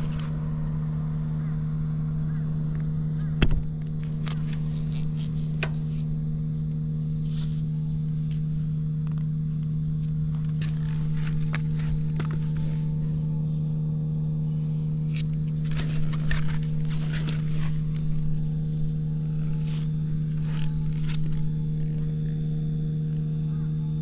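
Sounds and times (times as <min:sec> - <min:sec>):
motorcycle engine idling: 0:00.0 - 0:24.0
light clicks and scrapes: 0:15.0 - 0:18.3.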